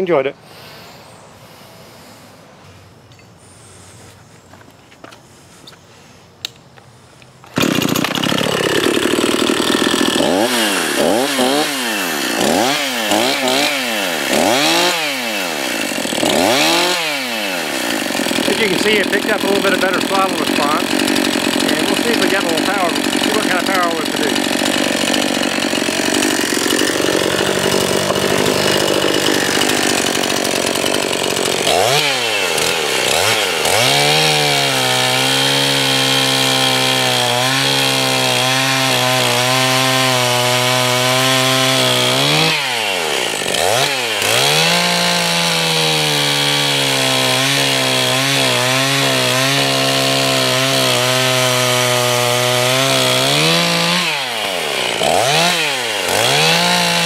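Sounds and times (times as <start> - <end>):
chainsaw cutting log: 6.4 - 57.0.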